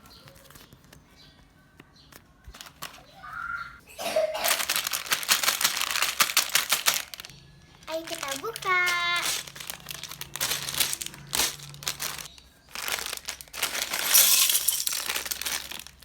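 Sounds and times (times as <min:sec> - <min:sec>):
packaging crinkling: 0:04.3 - 0:16.0.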